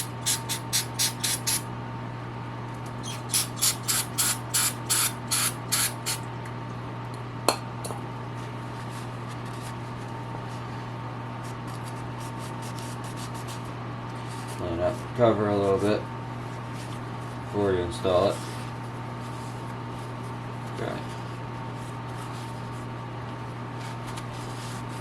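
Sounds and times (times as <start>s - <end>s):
steady low hum: 0.0s - 25.0s
aerosol can spraying: 0.1s - 1.6s, 3.1s - 6.2s.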